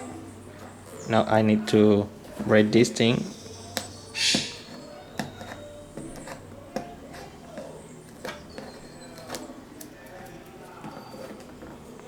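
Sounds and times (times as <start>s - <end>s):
packaging clicks and taps: 3.7s - 12.0s.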